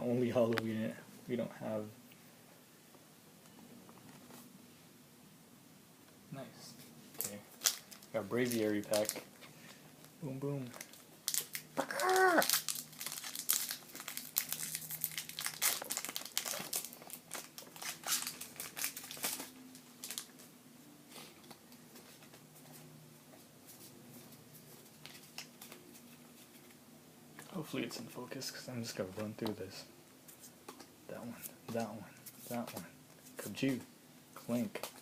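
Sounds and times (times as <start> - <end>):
foil wrapper tearing and crinkling: 7.2 - 9.2, 10.6 - 20.4.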